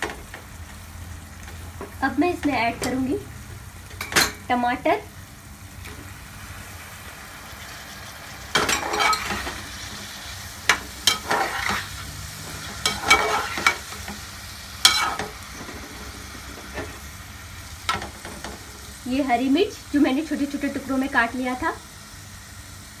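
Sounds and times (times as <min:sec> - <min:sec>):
faint sizzle: 0:00.0 - 0:23.0
utensil scraping a pan: 0:08.5 - 0:17.1.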